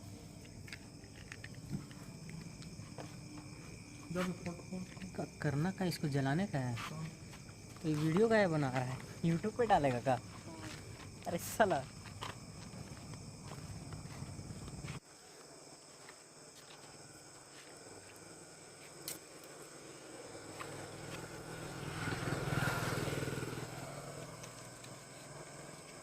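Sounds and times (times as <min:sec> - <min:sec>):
insect chorus: 0:00.0 - 0:26.0
vehicle passing: 0:20.2 - 0:26.0.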